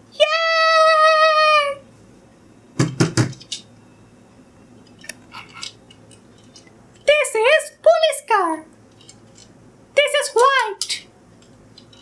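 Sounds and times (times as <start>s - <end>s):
plastic toys clicking and knocking: 2.8s - 3.7s, 10.3s - 12.0s.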